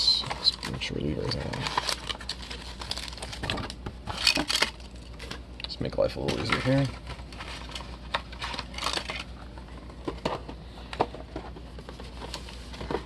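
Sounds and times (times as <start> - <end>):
foil packs rustling: 0.0 - 5.4, 6.2 - 10.4.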